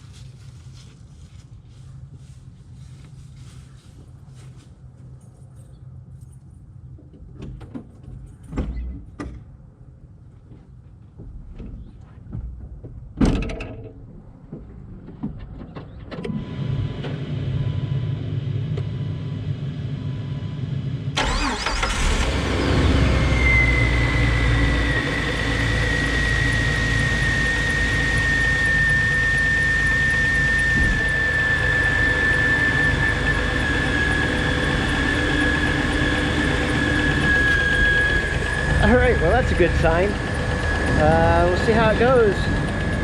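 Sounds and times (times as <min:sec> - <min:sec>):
car engine starting and idling: 0:15.9 - 0:43.0
high steady whine: 0:16.4 - 0:43.0.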